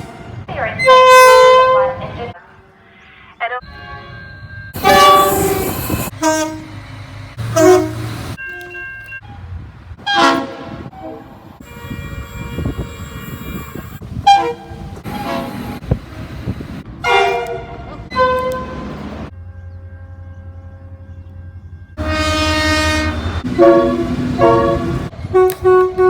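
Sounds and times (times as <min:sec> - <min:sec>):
low train rumble: 0:00.0 - 0:26.0
train horn blasts: 0:00.8 - 0:02.0, 0:03.6 - 0:06.8, 0:07.4 - 0:08.8, 0:10.0 - 0:15.9, 0:17.0 - 0:26.0.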